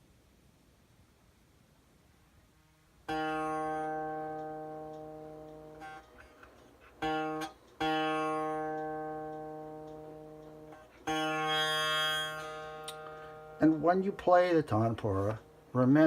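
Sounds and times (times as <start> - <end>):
buzzing plucked string: 3.0 - 16.0.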